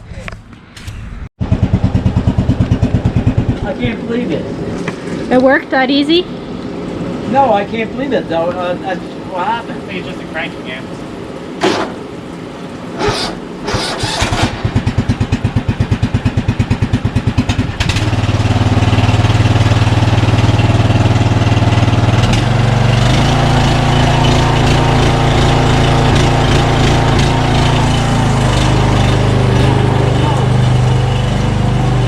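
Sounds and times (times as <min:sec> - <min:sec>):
lawn mower engine running: 0:01.4 - 0:05.3, 0:09.3 - 0:32.0
starter motor cranking engine: 0:13.0 - 0:32.0.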